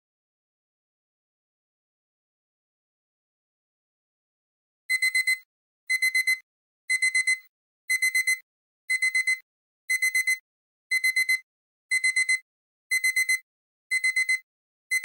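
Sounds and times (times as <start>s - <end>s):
digital timer beeping: 4.9s - 15.0s.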